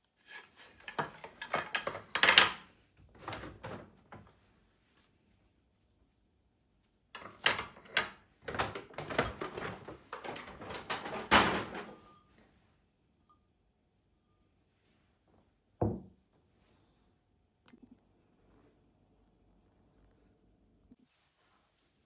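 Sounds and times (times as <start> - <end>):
household knocks and clatters: 0.3 - 4.3, 7.2 - 12.3.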